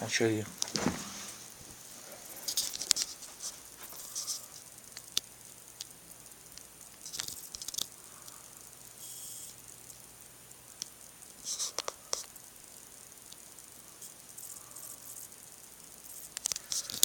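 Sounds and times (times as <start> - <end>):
plastic packaging clicks and crinkles: 0.5 - 1.0, 2.3 - 8.4, 16.2 - 17.0.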